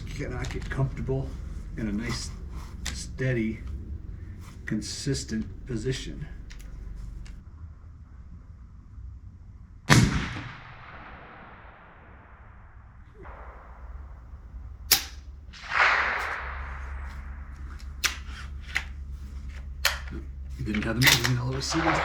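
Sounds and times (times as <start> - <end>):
rifle shots echoing: 0.0 - 7.4, 9.9 - 12.2, 13.2 - 22.0
short sharp clicks: 14.9 - 22.0.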